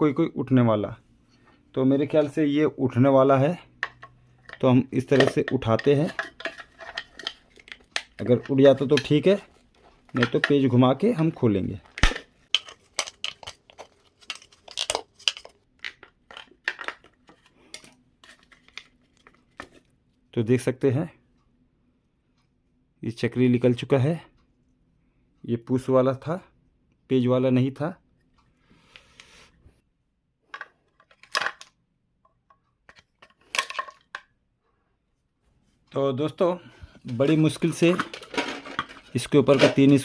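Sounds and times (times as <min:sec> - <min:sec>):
metal tools clinking: 0:03.8 - 0:10.8, 0:37.1 - 0:40.0.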